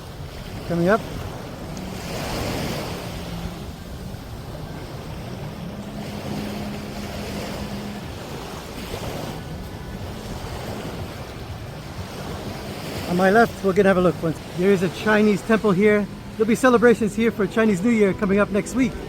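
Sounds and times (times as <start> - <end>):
low steady hum: 0.0 - 12.7
small waves washing on shore: 0.0 - 19.0
wind buffeting microphone: 0.0 - 19.0.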